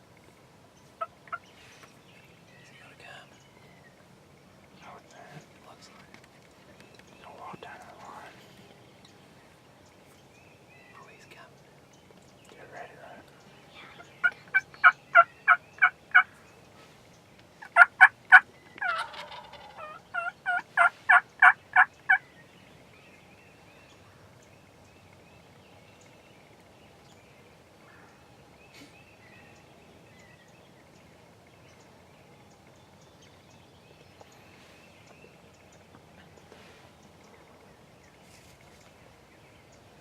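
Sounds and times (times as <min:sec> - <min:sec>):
faint outdoor background: 0:00.0 - 0:40.0
turkey gobbling: 0:14.2 - 0:16.3, 0:17.6 - 0:22.2
turkey yelping: 0:14.2 - 0:16.3, 0:17.6 - 0:22.2.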